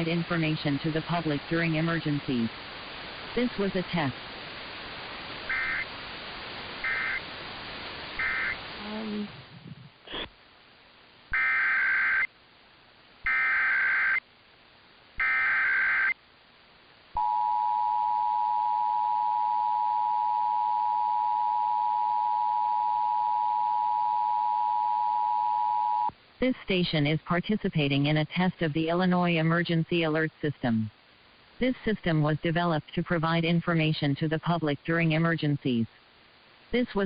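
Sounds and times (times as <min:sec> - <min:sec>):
radio hiss: 0:00.0 - 0:10.4
buzzing data bursts: 0:05.5 - 0:05.9, 0:06.8 - 0:07.3, 0:08.2 - 0:08.6, 0:15.2 - 0:16.2.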